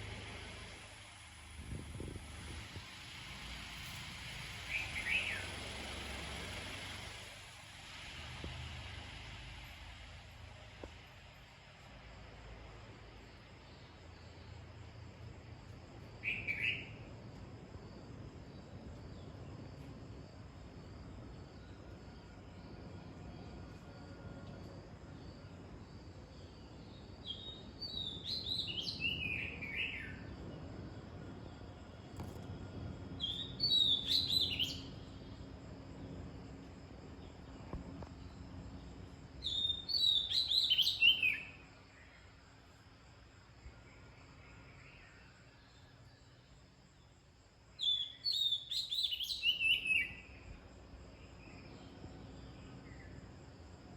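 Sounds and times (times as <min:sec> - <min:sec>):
songbird singing: 0:00.0 - 0:07.4, 0:08.4 - 0:53.9
high-pitched insect drone: 0:00.0 - 0:10.4.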